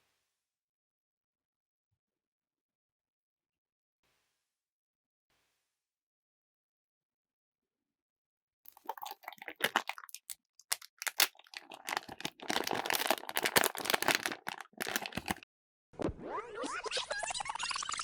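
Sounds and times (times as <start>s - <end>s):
foil bag crinkling and tearing: 8.7s - 15.4s.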